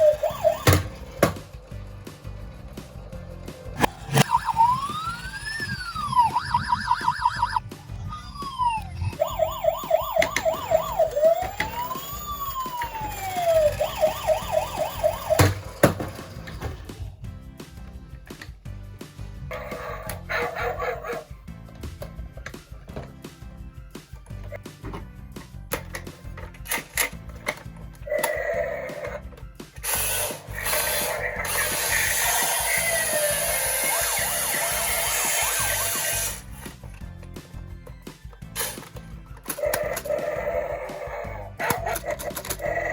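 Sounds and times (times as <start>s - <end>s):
toy siren warbling and wailing: 0.0s - 1.4s, 3.6s - 16.2s, 19.5s - 21.4s, 28.0s - 29.3s, 29.9s - 36.4s, 39.5s - 42.9s
background music: 0.0s - 42.9s.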